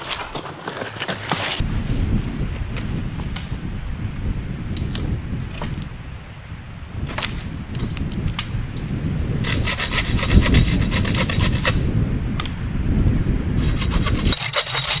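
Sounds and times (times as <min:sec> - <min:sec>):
saw cutting through wood: 0:09.4 - 0:11.9, 0:13.6 - 0:15.0.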